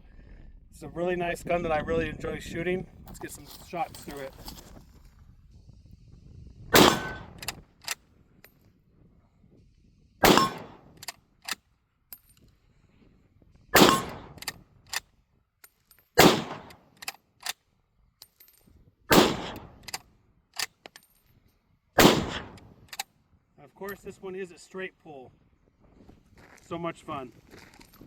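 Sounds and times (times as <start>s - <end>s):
rifle shots with echo: 6.7s - 7.6s, 10.2s - 11.0s, 13.8s - 14.5s, 16.2s - 16.8s, 19.1s - 19.9s, 22.0s - 22.8s
rifle bolt clicks: 6.8s - 8.0s, 13.8s - 15.1s, 16.2s - 17.6s, 19.1s - 21.1s, 22.0s - 23.1s.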